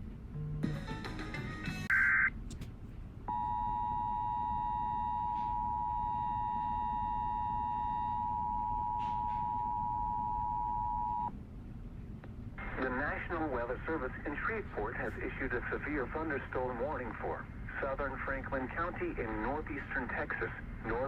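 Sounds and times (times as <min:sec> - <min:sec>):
two-tone attention signal: 0:03.3 - 0:11.3.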